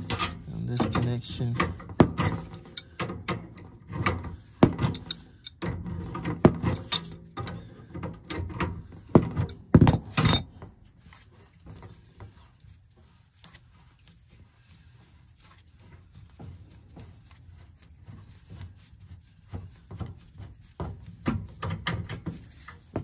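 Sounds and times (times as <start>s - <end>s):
wrenches clinking on metal fitting: 0.0s - 10.6s.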